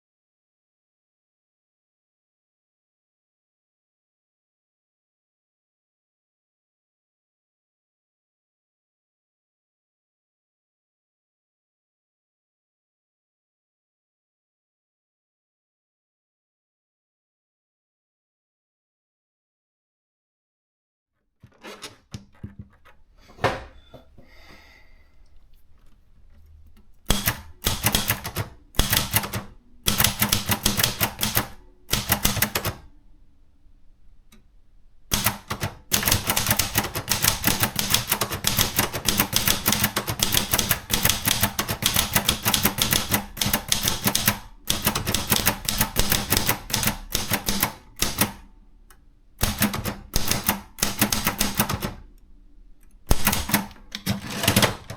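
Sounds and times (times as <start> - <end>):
typewriter keystrokes: 27.0 - 32.8, 35.1 - 48.5, 49.4 - 52.0, 53.1 - 54.9.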